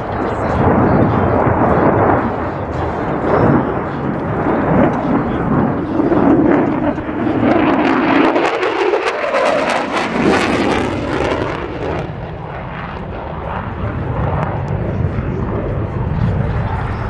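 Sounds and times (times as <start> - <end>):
jet engine roar: 0.0 - 17.0.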